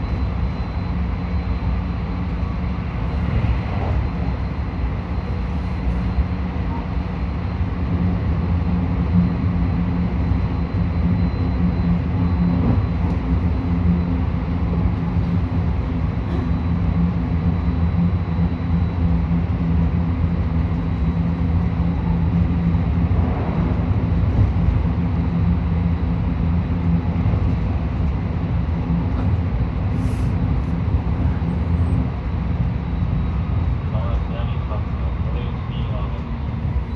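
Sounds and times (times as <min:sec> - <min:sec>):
train wheels rumbling on rail: 0:00.0 - 0:36.9
train motor hum: 0:02.0 - 0:32.9.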